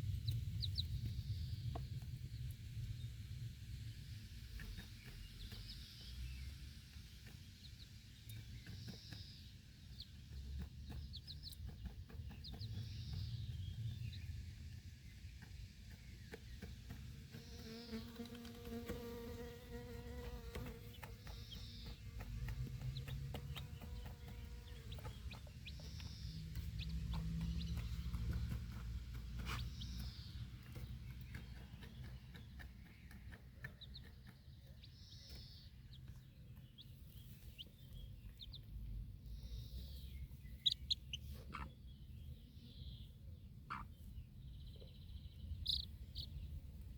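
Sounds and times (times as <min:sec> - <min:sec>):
chicks peeping: 0:00.0 - 0:02.6, 0:04.5 - 0:14.3, 0:15.4 - 0:46.9
low wind rumble: 0:00.0 - 0:06.5
fly buzzing: 0:17.4 - 0:21.5.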